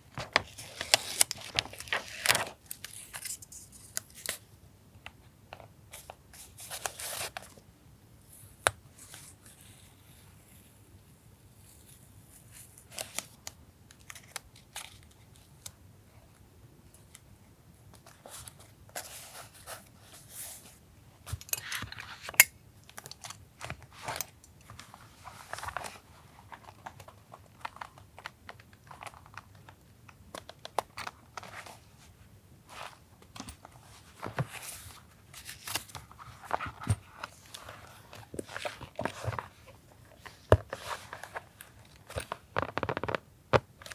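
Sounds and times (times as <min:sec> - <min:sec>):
paper rustling and crinkling: 0:00.0 - 0:04.4, 0:18.0 - 0:43.9.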